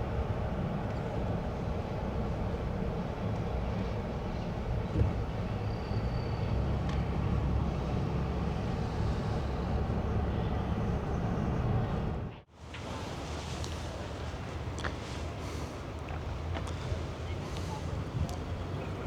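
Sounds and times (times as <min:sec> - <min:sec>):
vehicle driving rumble: 0:06.3 - 0:19.0.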